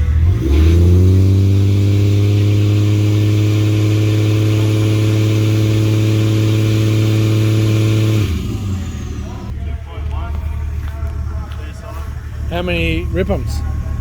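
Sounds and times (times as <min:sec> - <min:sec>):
car engine revving and idling: 0:00.0 - 0:14.0.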